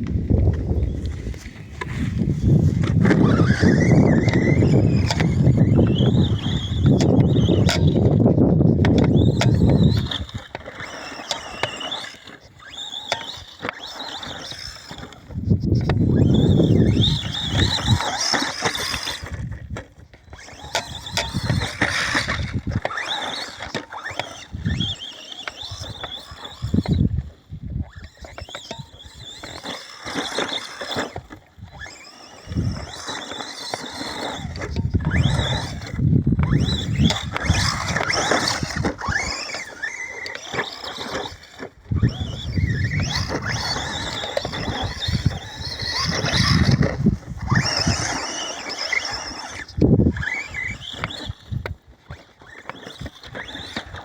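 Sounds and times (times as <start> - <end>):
tyres rushing on dirt: 0.0 - 8.0
gravel clicks: 0.0 - 54.0
high motor whine: 0.0 - 54.0
rc truck tyres rushing: 0.0 - 54.0.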